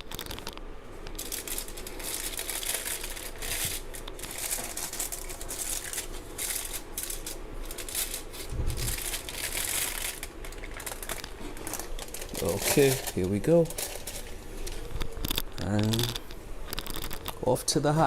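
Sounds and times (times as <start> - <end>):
crinkling handling noise: 0.0 - 17.5
dull low thump: 8.5 - 9.0.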